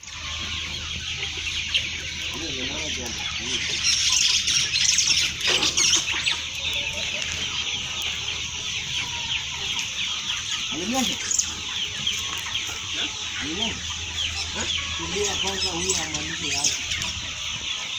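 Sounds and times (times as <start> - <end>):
chickens clucking: 0.0 - 17.9.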